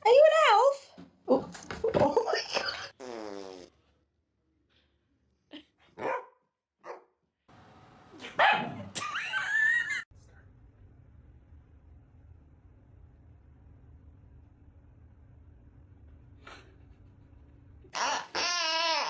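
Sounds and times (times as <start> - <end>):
dog barking: 6.0 - 7.2, 8.2 - 8.8
dog wavering cry: 18.0 - 19.0.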